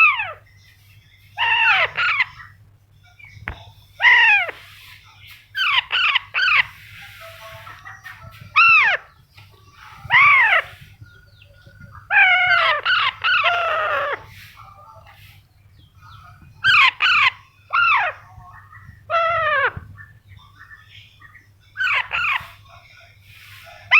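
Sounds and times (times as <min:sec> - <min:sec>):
parrot squawking: 0:00.0 - 0:00.4, 0:01.4 - 0:02.6, 0:04.0 - 0:04.9, 0:05.6 - 0:07.8, 0:08.5 - 0:09.2, 0:10.1 - 0:10.8, 0:12.1 - 0:14.5, 0:16.6 - 0:20.1, 0:21.8 - 0:22.7.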